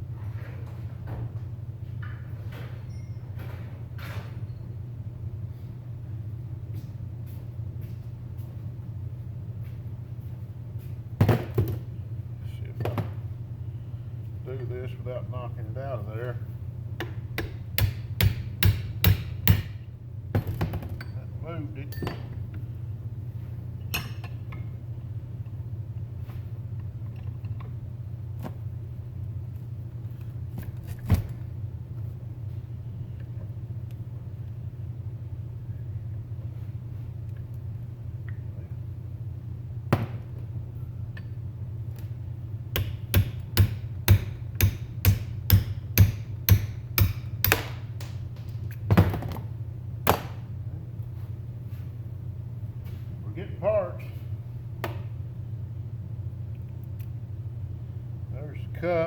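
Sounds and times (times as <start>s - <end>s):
steady low hum: 0.0s - 59.0s
hammer striking metal: 17.0s - 19.8s, 42.8s - 47.8s.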